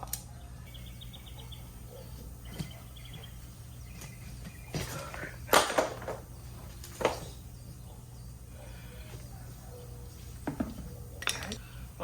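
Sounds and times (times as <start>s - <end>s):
steady low hum: 0.0s - 12.0s
bird chirping: 0.3s - 12.0s.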